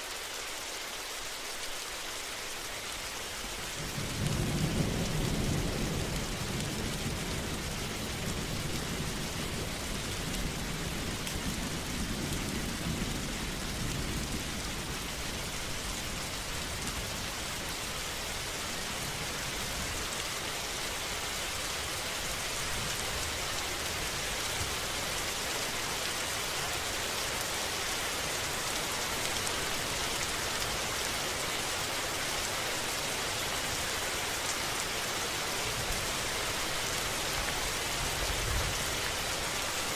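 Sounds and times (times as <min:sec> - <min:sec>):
steady rain falling: 0:00.0 - 0:39.9
low rumble of thunder: 0:03.8 - 0:17.8.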